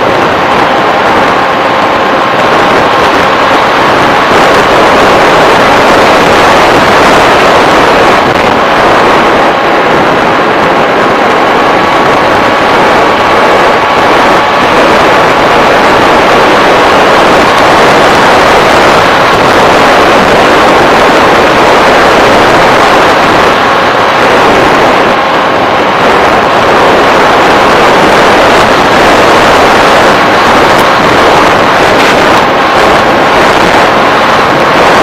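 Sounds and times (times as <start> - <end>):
faint whine: 0.0 - 35.0
wind on microphone: 0.0 - 35.0.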